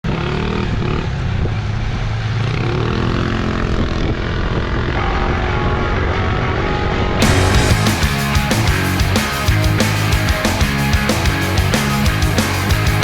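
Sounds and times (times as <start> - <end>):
engine revving: 7.2 - 13.0.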